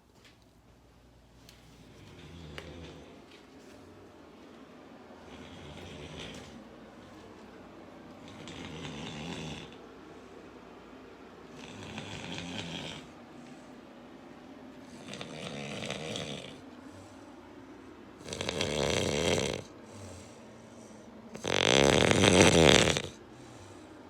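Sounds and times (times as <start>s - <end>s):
woman snoring loudly: 5.2s - 6.6s, 8.2s - 9.8s, 11.6s - 13.1s, 15.0s - 16.6s, 18.2s - 19.7s, 21.4s - 23.2s.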